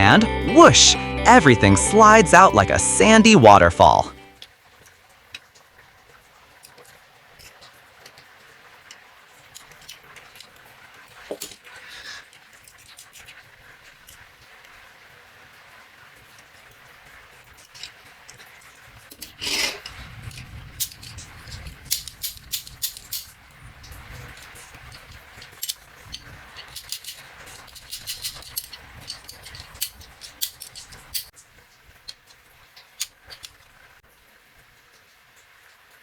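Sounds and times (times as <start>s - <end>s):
toy truck parts clicking and rattling: 9.5s - 11.8s, 12.6s - 13.4s, 17.6s - 18.0s, 19.1s - 23.4s, 24.3s - 31.3s, 32.0s - 33.6s
toy truck scraping: 19.2s - 20.0s.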